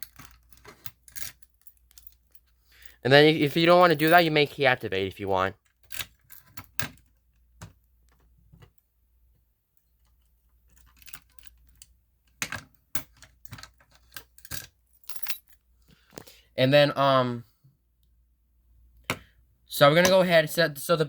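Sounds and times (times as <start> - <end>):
keys jangling: 14.4 - 15.6.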